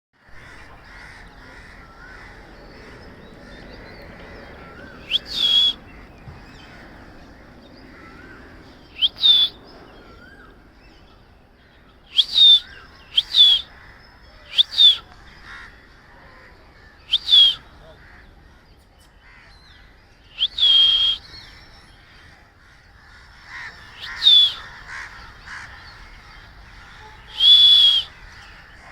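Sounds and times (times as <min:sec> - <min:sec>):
birds chirping: 0:00.2 - 0:28.9
parrots screeching: 0:04.6 - 0:05.8, 0:23.0 - 0:28.7.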